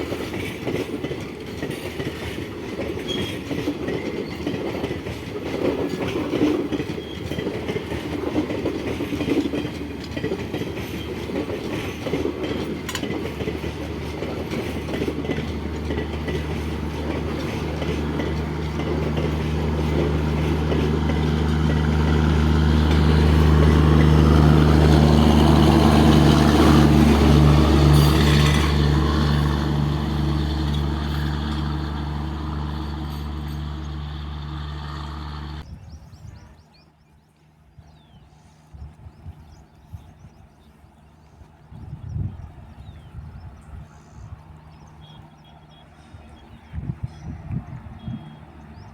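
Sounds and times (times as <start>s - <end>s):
train wheels clattering on rails: 0.0s - 35.7s
deep train engine hum: 0.0s - 48.9s.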